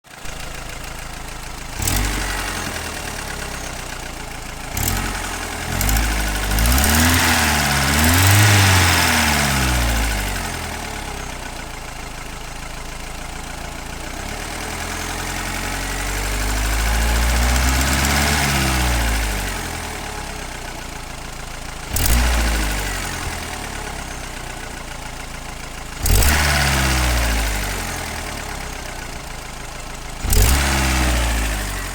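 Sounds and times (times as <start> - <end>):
car engine idling and revving: 0.0 - 31.9
engine knock: 0.1 - 31.9.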